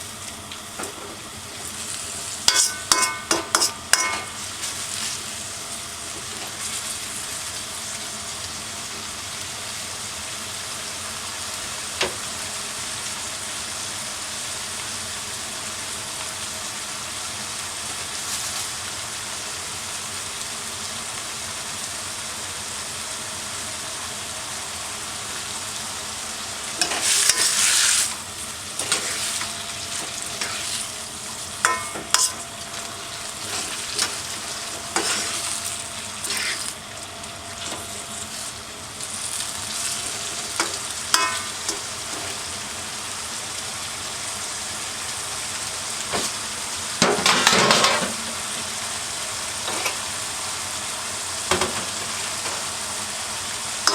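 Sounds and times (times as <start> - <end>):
food sizzling in a wok: 0.0 - 53.9
utensil scraping and clattering on wok: 2.4 - 5.3, 26.8 - 36.8, 39.2 - 42.5, 47.0 - 48.4, 49.6 - 50.1, 51.5 - 52.7.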